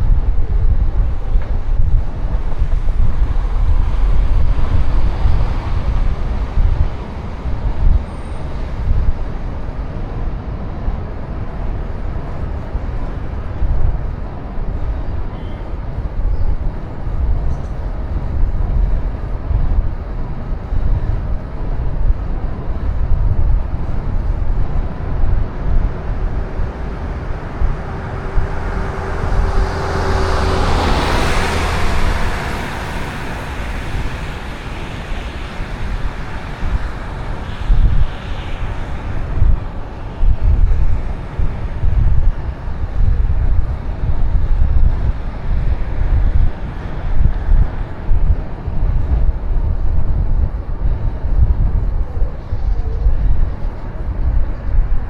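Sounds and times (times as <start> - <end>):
bicycle road rumble: 0.0 - 55.0
wind buffeting microphone: 0.0 - 55.0
motor vehicle passing: 23.7 - 49.1.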